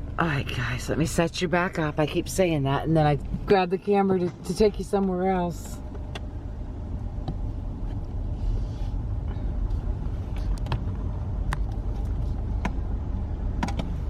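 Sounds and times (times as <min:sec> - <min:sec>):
car cabin rumble: 0:00.0 - 0:14.0.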